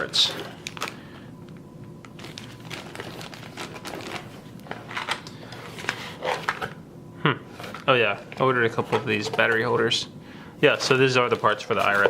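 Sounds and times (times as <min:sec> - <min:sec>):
plastic bags crinkling: 0:00.3 - 0:01.0, 0:02.0 - 0:06.7, 0:10.7 - 0:12.0.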